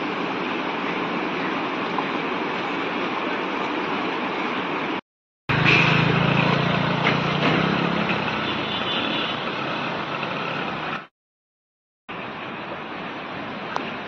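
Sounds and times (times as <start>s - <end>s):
floodwater rushing: 0.0s - 11.1s.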